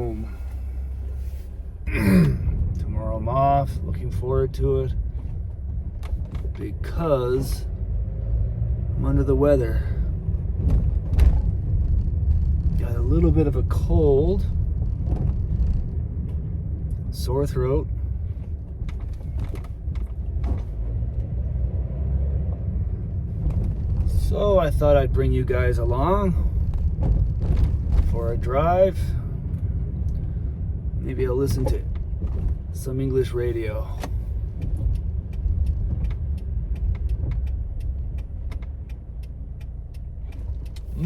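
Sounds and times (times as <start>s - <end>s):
car engine and road rumble: 0.0s - 41.0s
small irregular rattles: 4.9s - 7.6s, 9.6s - 21.3s, 22.6s - 41.0s.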